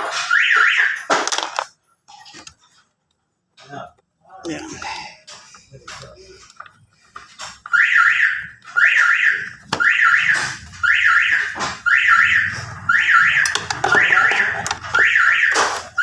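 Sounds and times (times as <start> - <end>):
electronic alarm warbling: 7.7 - 16.0.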